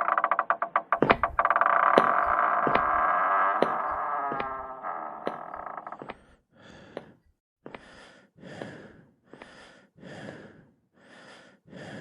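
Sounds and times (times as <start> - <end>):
person breathing heavily: 6.1 - 12.0.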